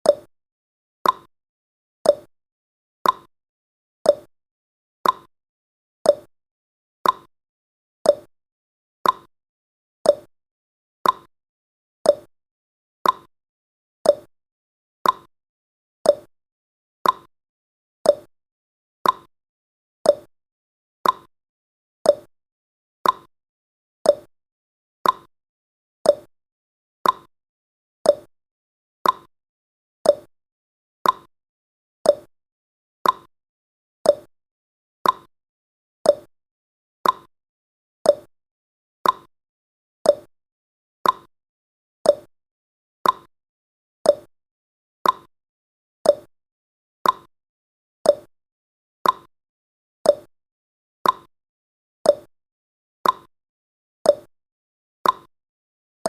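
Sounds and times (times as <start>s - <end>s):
timer clicks: 0.0s - 0.3s, 1.0s - 1.3s, 2.0s - 2.3s, 3.0s - 3.3s, 4.1s - 4.3s, 5.0s - 5.3s, 6.1s - 6.3s, 7.0s - 7.3s, 8.0s - 8.3s, 9.0s - 9.3s, 10.0s - 10.3s, 11.0s - 11.3s, 12.0s - 12.3s, 13.0s - 13.3s, 14.0s - 14.3s, 15.0s - 15.3s, 16.0s - 16.3s, 17.0s - 17.3s, 18.0s - 18.3s, 19.0s - 19.3s, 20.0s - 20.3s, 21.0s - 21.3s, 22.0s - 22.3s, 23.0s - 23.3s, 24.0s - 24.3s, 25.0s - 25.3s, 26.0s - 26.3s, 27.0s - 27.3s, 28.0s - 28.3s, 29.0s - 29.3s, 30.0s - 30.3s, 31.0s - 31.3s, 32.0s - 32.3s, 33.0s - 33.3s, 34.0s - 34.3s, 35.0s - 35.3s, 36.0s - 36.3s, 37.0s - 37.3s, 38.0s - 38.3s, 39.0s - 39.3s, 40.0s - 40.3s, 41.0s - 41.3s, 42.0s - 42.3s, 43.0s - 43.3s, 44.0s - 44.3s, 45.0s - 45.3s, 46.0s - 46.3s, 47.0s - 47.3s, 48.0s - 48.3s, 49.0s - 49.3s, 50.0s - 50.3s, 51.0s - 51.3s, 52.1s - 52.3s, 53.0s - 53.3s, 54.1s - 54.3s, 55.0s - 55.3s.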